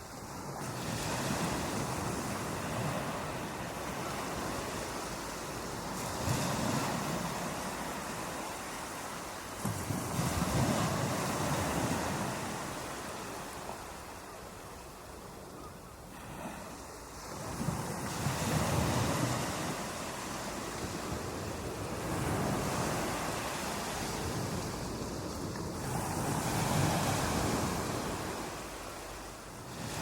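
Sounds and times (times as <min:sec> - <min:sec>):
ocean waves breaking: 0:00.4 - 0:14.3, 0:16.0 - 0:30.0
wind noise on microphone: 0:09.6 - 0:12.9, 0:16.2 - 0:28.8.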